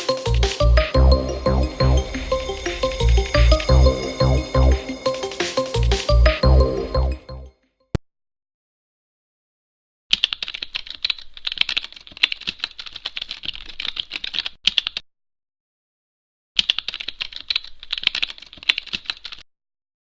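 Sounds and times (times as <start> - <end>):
rapid typing on keyboard: 10.1 - 15.0, 16.6 - 19.4.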